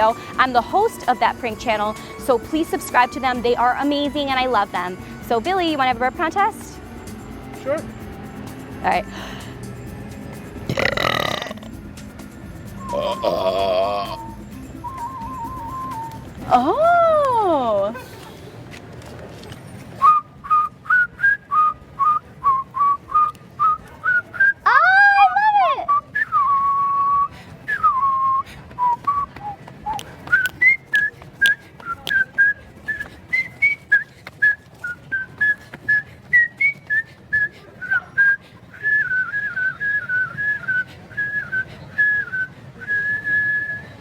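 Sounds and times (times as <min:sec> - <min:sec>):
light clicking beat: 0:11.5 - 0:17.9, 0:28.7 - 0:36.0
whistled tune: 0:12.5 - 0:17.3, 0:20.0 - 0:24.8, 0:25.7 - 0:44.0.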